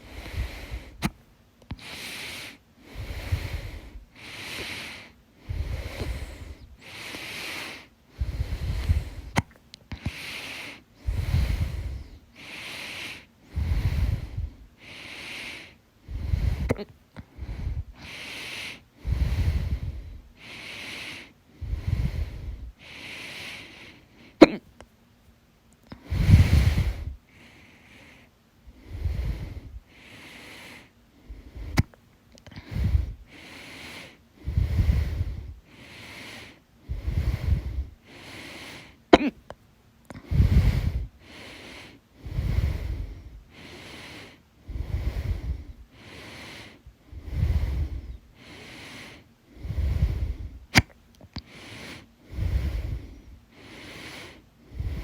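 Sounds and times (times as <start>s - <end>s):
woman breathing heavily: 0.0s - 24.6s, 25.9s - 55.0s
woman hiccuping: 24.4s - 24.7s, 39.2s - 39.4s.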